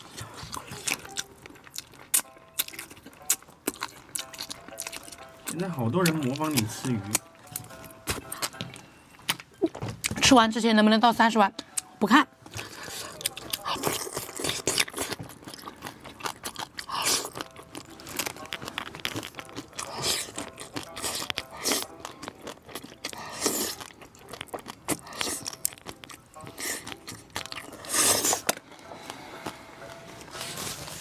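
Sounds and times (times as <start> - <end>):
person chewing and crunching: 0.0 - 10.2, 12.5 - 30.0.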